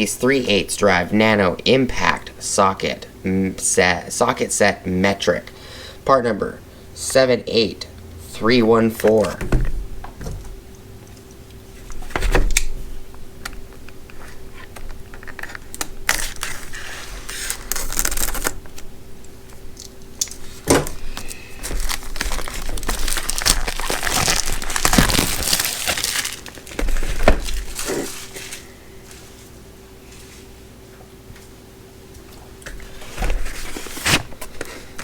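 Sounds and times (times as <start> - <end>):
packaging crinkling and tearing: 14.3 - 18.9, 19.8 - 28.7.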